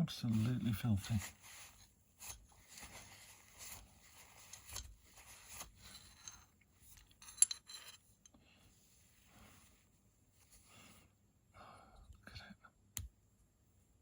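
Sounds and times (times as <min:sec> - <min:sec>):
faint scraping and rustling: 0:00.1 - 0:11.2.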